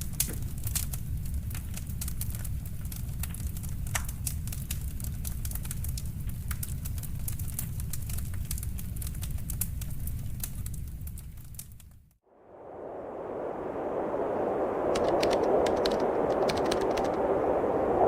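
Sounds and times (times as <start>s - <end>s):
wood fire crackling: 0.0s - 12.2s, 14.8s - 17.7s
rushing wind: 12.3s - 18.0s.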